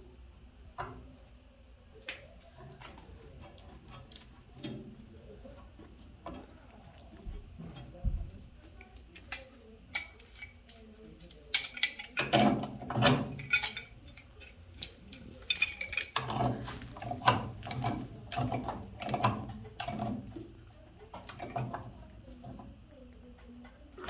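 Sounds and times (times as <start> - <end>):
hand tools clicking and clanking: 8.7 - 22.6.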